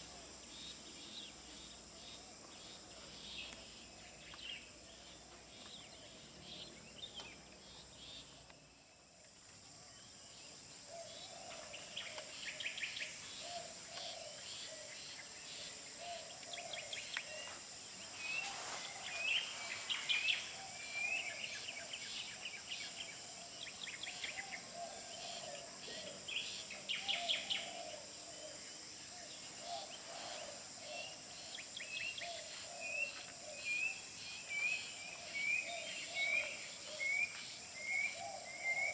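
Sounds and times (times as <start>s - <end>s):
lower repeated bird calls: 10.0s - 38.9s
birds chirping and trilling: 16.0s - 38.9s
high-pitched insect drone: 27.3s - 31.5s.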